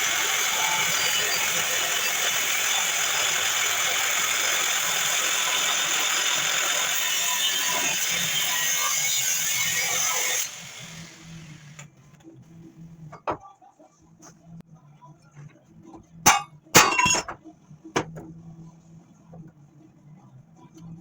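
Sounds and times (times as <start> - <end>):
cut-off wheel grinding steel: 0.0 - 11.7.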